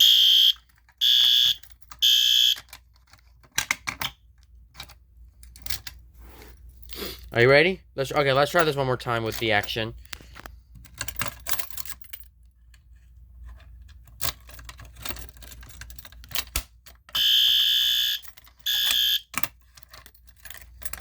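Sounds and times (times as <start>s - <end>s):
fire alarm horn blasts: 0.0s - 2.6s, 17.2s - 19.3s
fire alarm pull station clicks: 0.1s - 2.8s, 16.5s - 19.5s.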